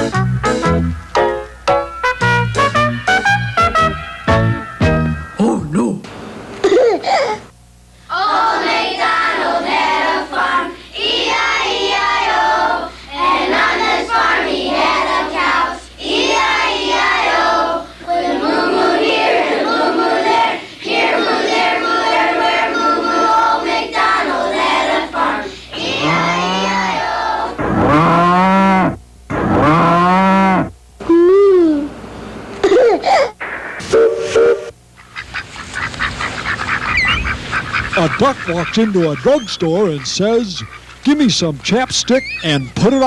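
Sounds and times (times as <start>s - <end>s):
children singing: 8.1s - 27.6s, 42.1s - 43.0s
drawn-out moo sounds: 27.8s - 30.7s.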